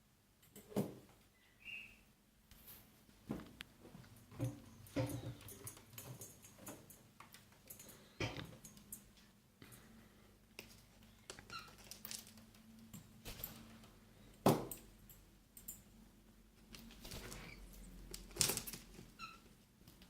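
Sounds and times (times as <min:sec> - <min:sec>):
short bird chirps: 0:01.4 - 0:02.0
birds pecking and cracking food: 0:10.5 - 0:15.8, 0:16.6 - 0:20.0.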